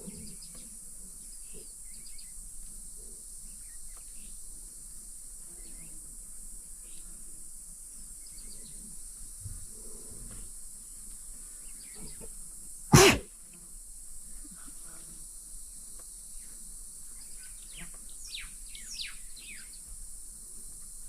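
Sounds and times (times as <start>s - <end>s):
lioness sneezing: 12.9s - 13.3s.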